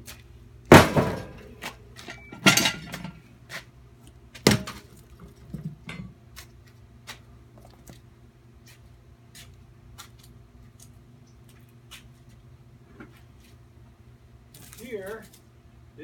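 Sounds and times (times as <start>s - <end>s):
loud metal clanks: 0.7s - 3.2s.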